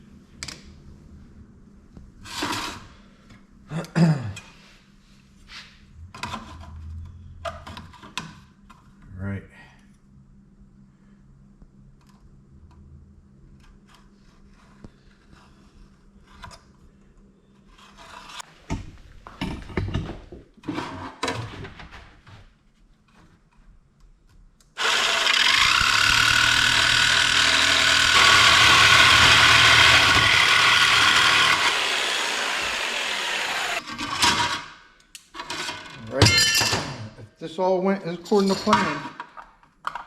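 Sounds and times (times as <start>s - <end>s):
jigsaw cutting aluminum sheet: 24.8s - 33.8s.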